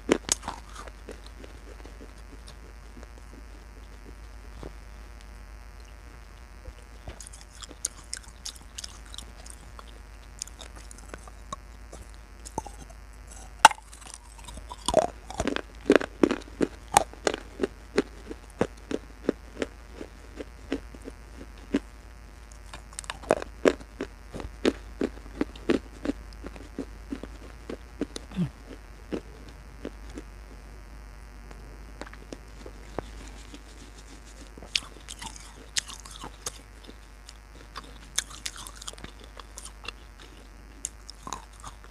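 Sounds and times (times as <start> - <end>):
quiet chewing: 0.0 - 41.9
crunching clay pot pieces: 7.0 - 21.8, 32.1 - 41.9.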